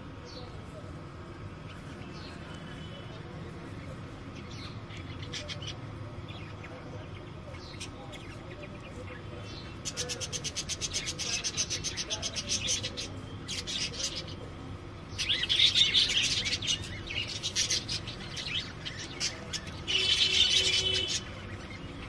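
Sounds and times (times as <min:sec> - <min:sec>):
budgerigars chattering and chirping: 0:04.3 - 0:14.5, 0:15.1 - 0:22.0.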